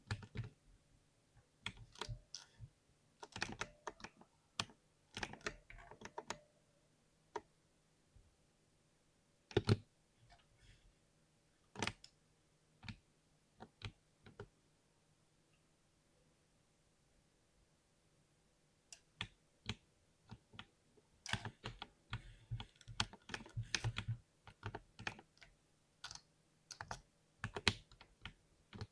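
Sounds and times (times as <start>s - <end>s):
keyboard typing: 21.3s - 25.3s.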